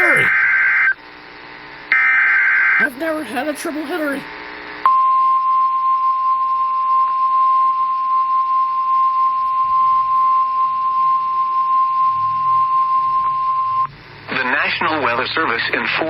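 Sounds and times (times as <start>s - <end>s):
steady loud alarm tone: 0.0s - 0.7s.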